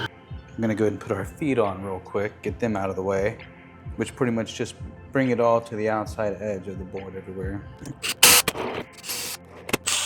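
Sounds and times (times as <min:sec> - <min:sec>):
parts scraping and rustling: 0:08.0 - 0:10.0
sharp clicks: 0:08.0 - 0:10.0.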